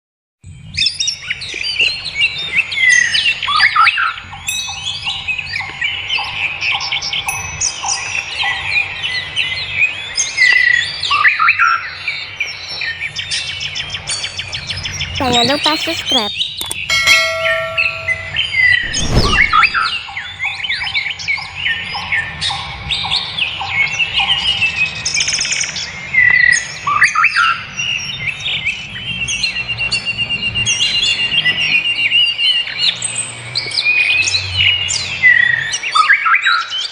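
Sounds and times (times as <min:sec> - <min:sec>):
fast even trill: 0:15.2 - 0:19.9
low thump: 0:16.9 - 0:20.0.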